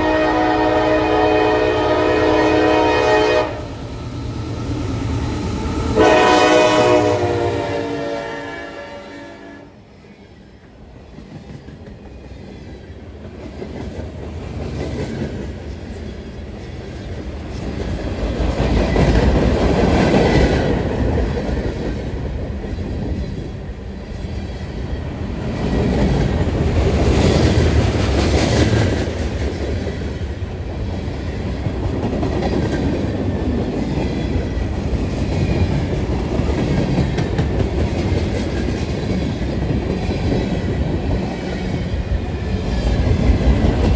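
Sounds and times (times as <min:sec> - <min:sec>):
train wheels clacking on rails: 0:10.6 - 0:43.9.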